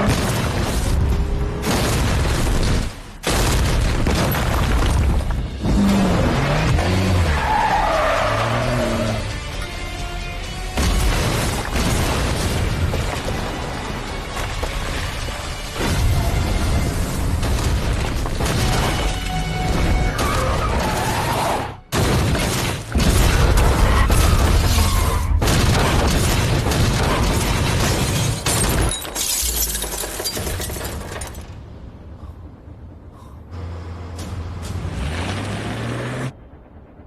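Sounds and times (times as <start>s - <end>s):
dramatic film score: 0.0s - 29.0s, 29.8s - 37.0s
glass shattering: 27.3s - 31.4s.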